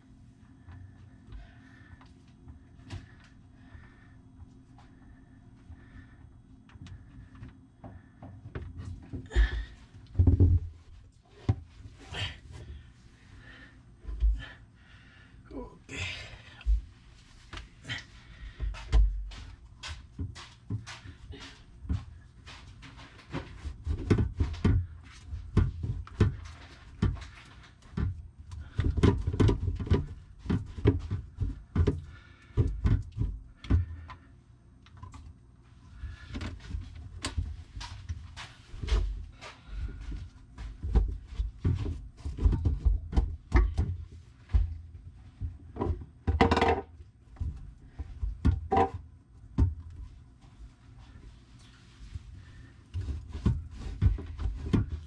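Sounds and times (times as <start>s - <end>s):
tools knocking and clattering: 45.7s - 47.6s, 48.4s - 49.0s.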